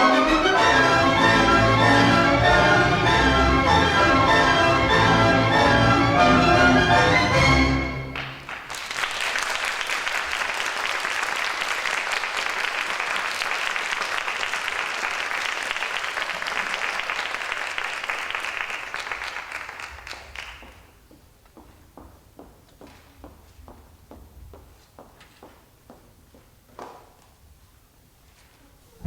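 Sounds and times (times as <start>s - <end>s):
audience applauding: 0.0s - 21.0s.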